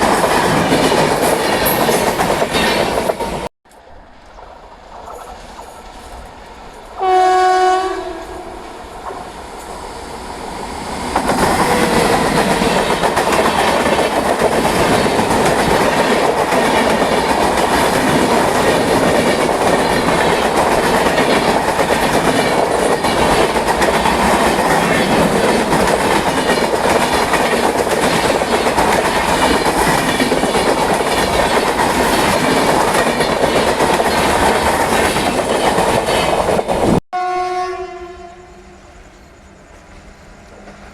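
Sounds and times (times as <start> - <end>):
train wheels clattering over rails: 0.0 - 3.5, 10.8 - 37.0
locomotive two-tone horn: 7.0 - 8.6, 37.1 - 38.7.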